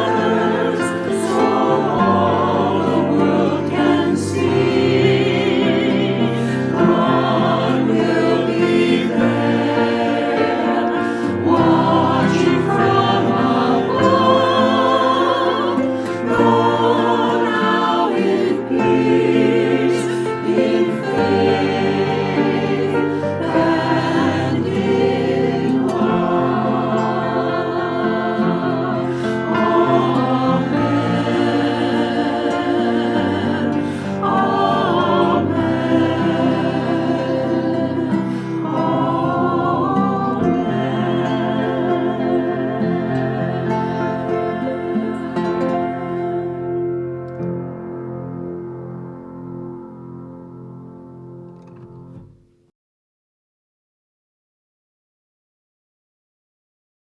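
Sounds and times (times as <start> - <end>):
choir singing a hymn: 0.0 - 52.4
instrumental accompaniment: 0.0 - 52.6.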